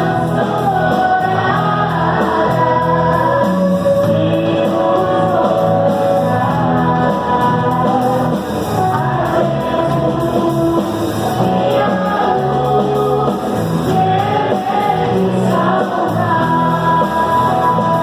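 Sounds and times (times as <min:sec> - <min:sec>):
band with guitar playing: 0:00.0 - 0:18.0
person singing: 0:00.0 - 0:18.0.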